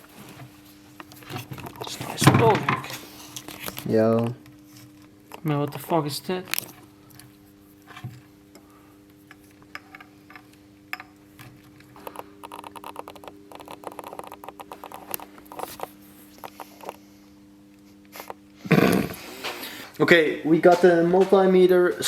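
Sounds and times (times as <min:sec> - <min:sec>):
steady low hum: 0:00.0 - 0:22.0
clicks and scratches on plastic: 0:12.0 - 0:17.0.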